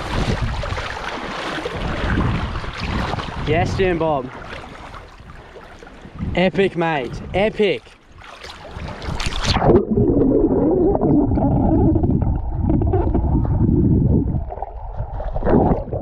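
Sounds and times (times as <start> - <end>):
wind buffeting microphone: 0.0 - 0.9, 1.7 - 4.2, 6.0 - 7.4, 8.7 - 16.0.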